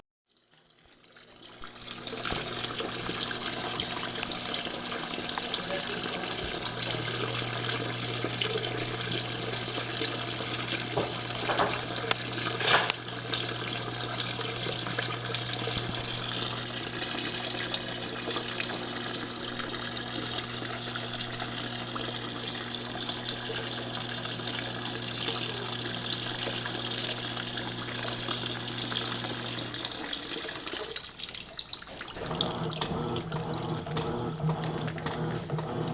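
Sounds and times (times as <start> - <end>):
water pouring into tub: 0.3 - 35.9.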